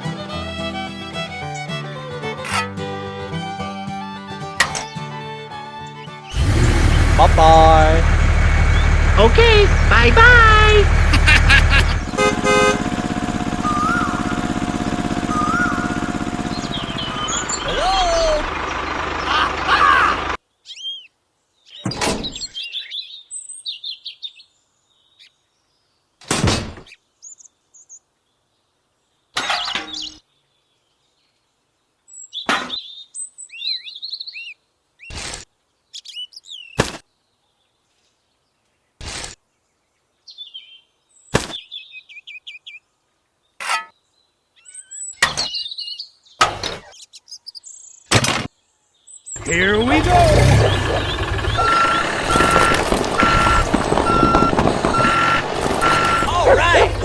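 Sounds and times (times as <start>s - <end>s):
birds chirping: 5.7s - 26.1s, 44.2s - 57.0s.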